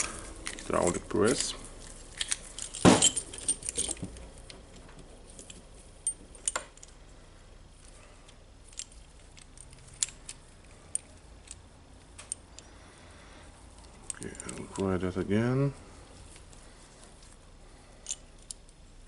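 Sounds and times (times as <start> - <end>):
metal tools clinking and knocking: 0.0 - 4.2.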